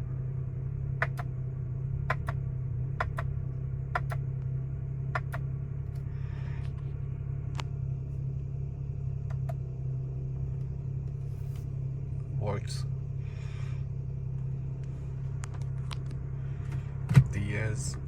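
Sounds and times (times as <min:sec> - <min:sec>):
car engine idling: 0:00.0 - 0:18.0
shift paddle clicks: 0:04.0 - 0:04.2.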